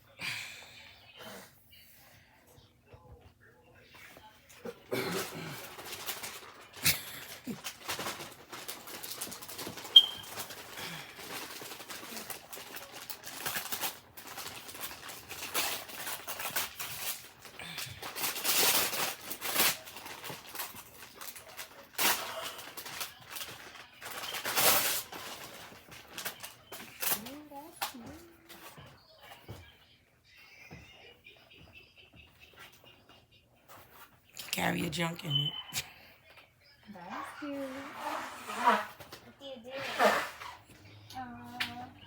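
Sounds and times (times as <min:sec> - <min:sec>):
gift packaging rustling: 0:04.9 - 0:29.6, 0:33.6 - 0:35.5.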